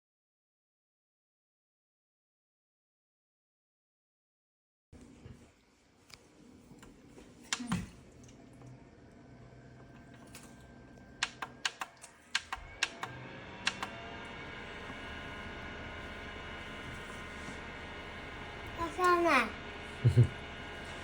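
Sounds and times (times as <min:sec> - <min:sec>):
fan motor hum and whine: 0:06.1 - 0:21.0.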